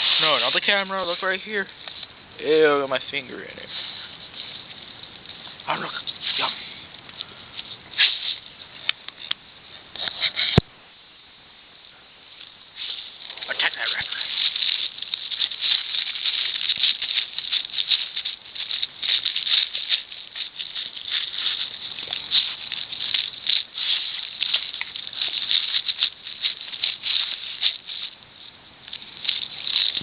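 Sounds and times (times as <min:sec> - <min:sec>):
dog chewing and licking: 0:13.7 - 0:28.2.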